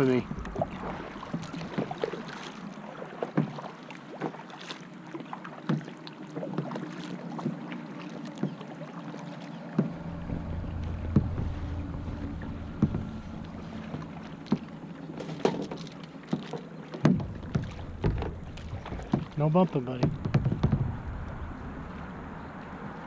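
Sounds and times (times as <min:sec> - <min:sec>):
wind rumble on microphone: 0:00.0 - 0:02.0, 0:09.8 - 0:14.8, 0:17.1 - 0:23.0
paddle knocking against hull: 0:00.0 - 0:22.1
moving water: 0:00.0 - 0:23.0
paddle splashes: 0:00.0 - 0:23.0.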